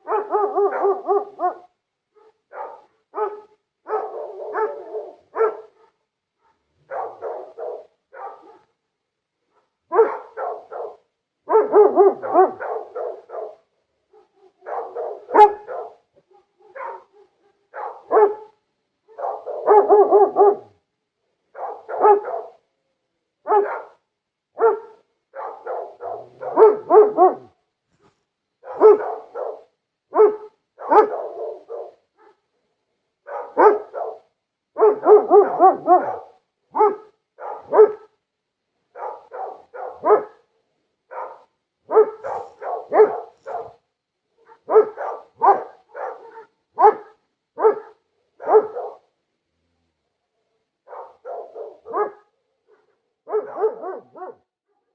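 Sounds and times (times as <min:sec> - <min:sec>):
dog barking: 0:00.0 - 0:08.8, 0:09.5 - 0:20.8, 0:21.5 - 0:22.6, 0:23.4 - 0:24.0, 0:24.6 - 0:27.6, 0:28.6 - 0:32.5, 0:33.2 - 0:38.2, 0:38.9 - 0:40.5, 0:41.1 - 0:49.1, 0:50.8 - 0:54.9.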